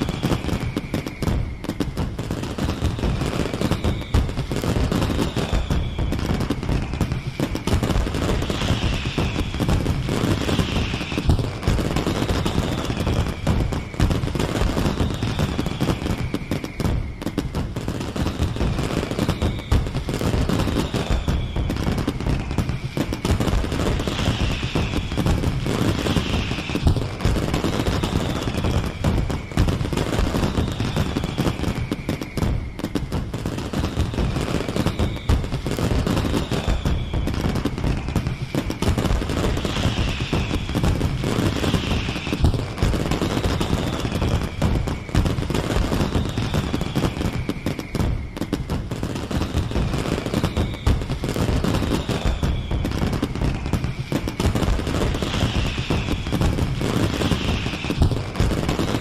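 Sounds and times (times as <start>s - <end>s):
falling firework whistles: 0.0s - 59.0s
fireworks crackling bangs: 0.0s - 59.0s.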